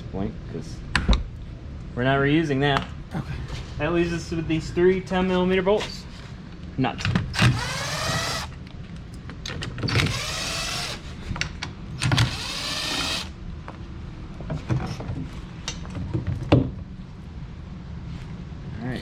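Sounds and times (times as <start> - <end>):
power tool whine: 7.4 - 8.6, 10.0 - 11.0, 12.1 - 13.4.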